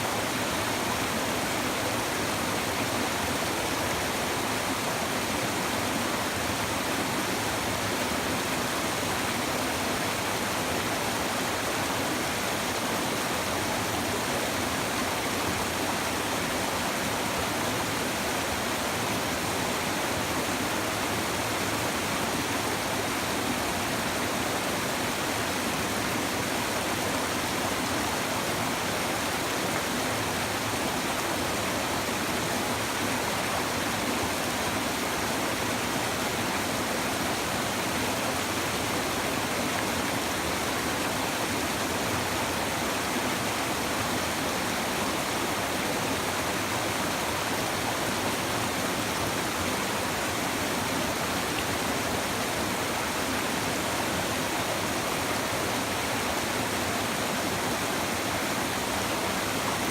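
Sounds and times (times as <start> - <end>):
river babbling over stones: 0.0 - 59.9.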